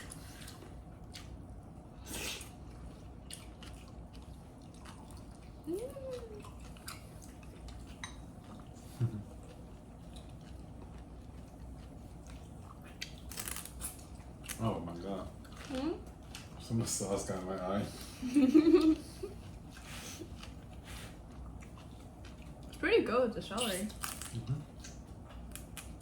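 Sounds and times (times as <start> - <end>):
chewing: 0.0 - 18.1, 18.7 - 22.8, 23.6 - 26.0.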